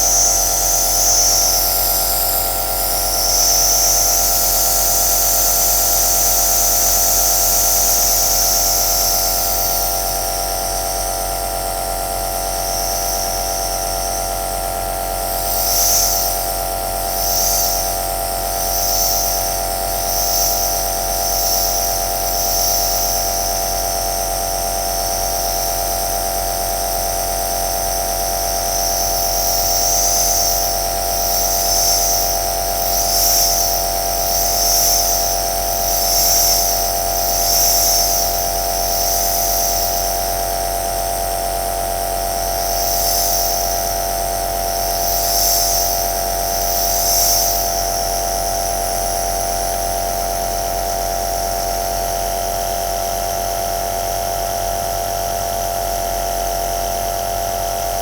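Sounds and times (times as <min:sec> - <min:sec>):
nebulizer compressor hum and hiss: 0:00.0 - 0:53.6.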